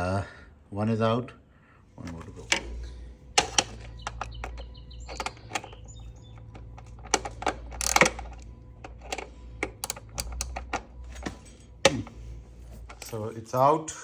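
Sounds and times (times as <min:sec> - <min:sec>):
sharp metal taps: 0:02.4 - 0:13.1
hand ratchet clicking: 0:03.4 - 0:12.2.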